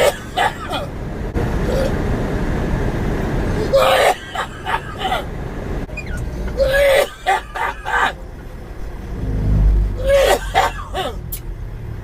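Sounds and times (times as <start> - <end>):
person coughing: 0.0 - 0.9, 10.0 - 11.4
steady low rumble: 7.2 - 12.0.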